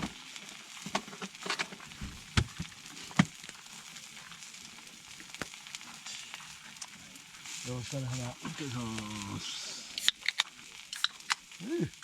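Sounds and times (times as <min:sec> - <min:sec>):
food frying sizzle: 0:00.0 - 0:12.0
small clicks: 0:10.0 - 0:11.6.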